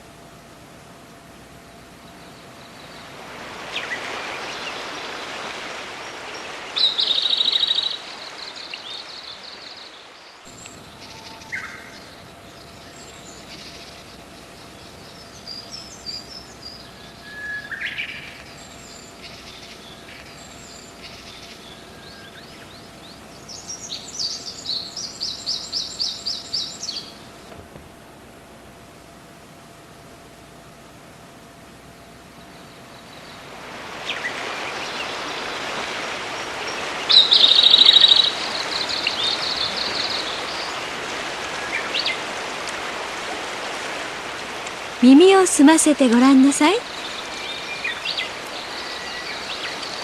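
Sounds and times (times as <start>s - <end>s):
songbirds singing and calling: 6.0s - 27.6s, 32.0s - 43.1s, 44.6s - 50.0s.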